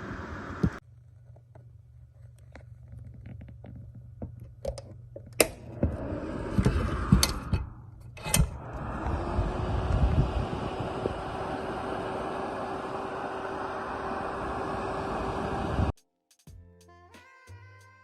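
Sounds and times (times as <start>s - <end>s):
heater fan rushing: 0.0s - 0.8s, 5.4s - 16.0s.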